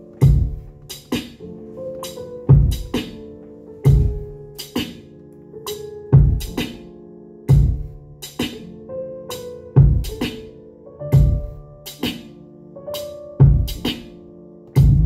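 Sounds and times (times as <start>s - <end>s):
hip-hop beat: 0.0s - 15.0s
sampled melodic loop: 0.0s - 15.0s
drum machine kicks snares hi-hats: 0.2s - 1.4s, 2.0s - 3.2s, 3.9s - 4.9s, 6.2s - 6.8s, 7.5s - 8.6s, 13.4s - 14.0s, 14.8s - 15.0s.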